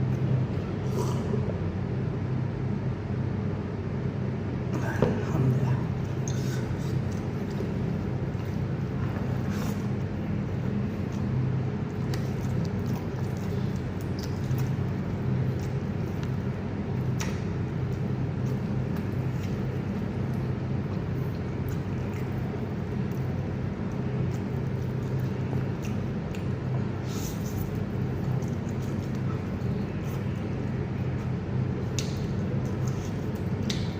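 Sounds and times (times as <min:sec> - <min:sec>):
low machine hum: 0:00.0 - 0:33.9.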